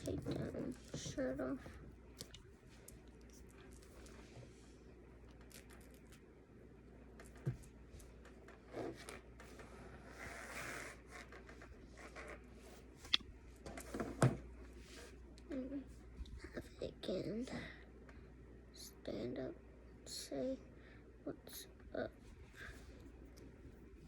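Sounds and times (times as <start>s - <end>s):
cloth rustling and scraping: 7.4s - 13.0s.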